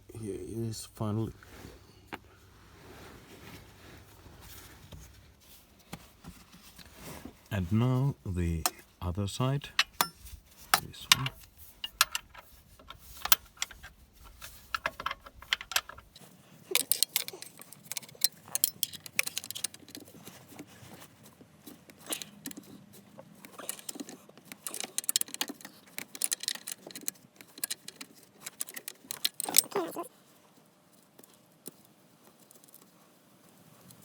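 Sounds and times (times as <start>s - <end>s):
wrench clicking on nut: 23.6s - 29.7s.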